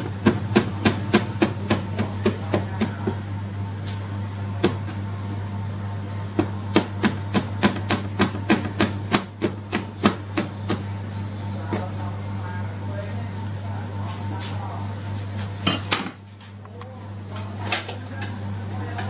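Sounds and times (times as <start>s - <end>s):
steady low hum: 0.0s - 19.0s
chopping on cutting board: 0.1s - 3.2s, 6.4s - 10.8s.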